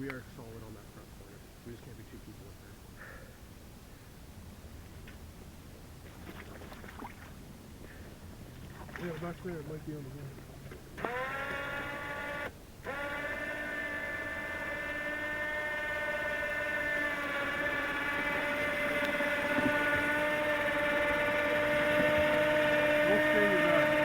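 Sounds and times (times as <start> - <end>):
small electric motor whining: 10.9 - 24.0.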